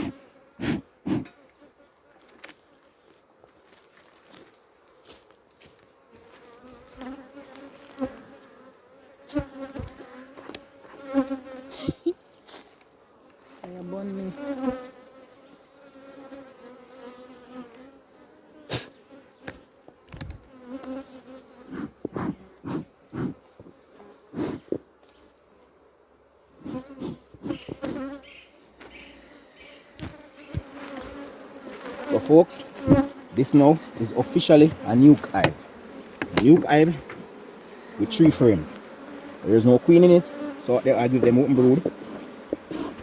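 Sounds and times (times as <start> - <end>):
bees buzzing: 0.0 - 1.8, 6.0 - 12.2, 13.0 - 43.0
hive frames knocking: 26.7 - 28.2, 32.8 - 33.1, 35.2 - 37.4.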